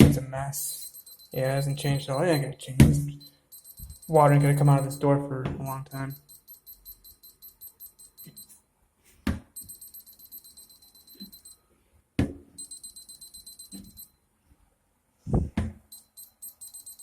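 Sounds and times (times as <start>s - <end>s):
moisture meter beeping: 0.6s - 8.6s, 9.6s - 11.6s, 12.6s - 14.1s, 15.9s - 17.0s.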